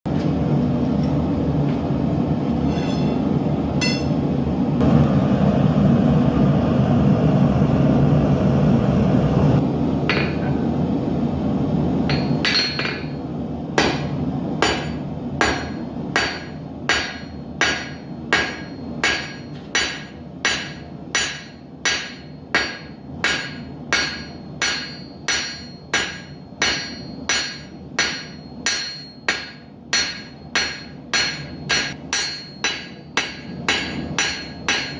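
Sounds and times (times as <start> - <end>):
gas forge burner roar: 0.1 - 34.9
hammer striking steel on anvil: 2.6 - 4.3, 10.1 - 10.7, 12.1 - 13.2, 13.8 - 34.9.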